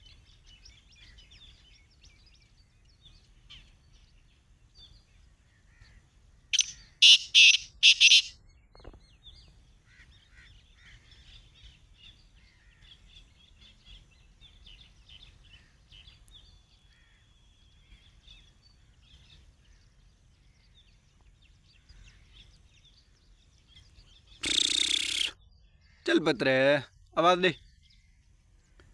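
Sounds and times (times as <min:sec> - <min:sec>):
small birds chirping: 0:00.0 - 0:28.9
francolin calling harshly: 0:06.5 - 0:08.4, 0:24.3 - 0:27.6.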